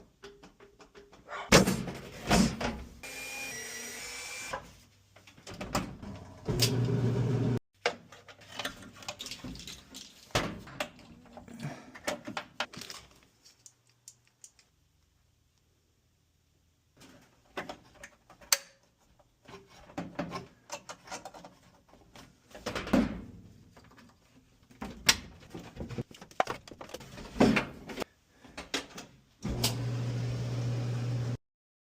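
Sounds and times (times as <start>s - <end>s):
tools and metal parts clattering: 7.8s - 14.7s, 17.0s - 23.0s, 23.7s - 28.0s.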